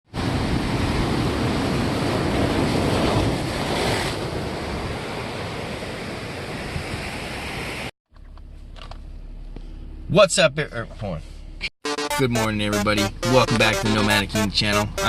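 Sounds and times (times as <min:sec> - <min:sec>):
ocean surf breaking on beach: 0:00.2 - 0:07.9.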